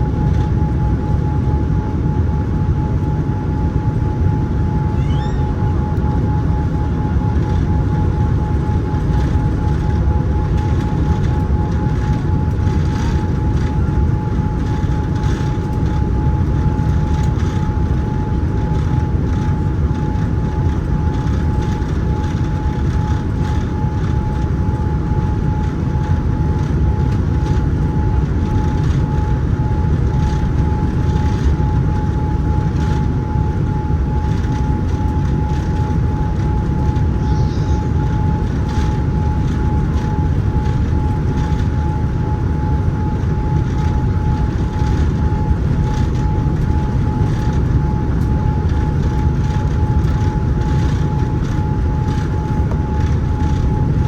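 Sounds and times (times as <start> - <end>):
steady high whine: 0.0 - 16.2, 32.0 - 54.0
airliner cabin engine roar: 0.0 - 54.0.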